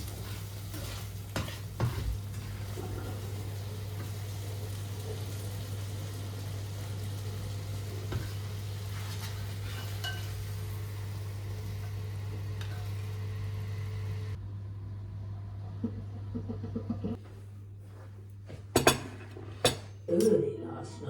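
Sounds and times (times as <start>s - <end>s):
food sizzling in a frying pan: 0.0s - 14.4s.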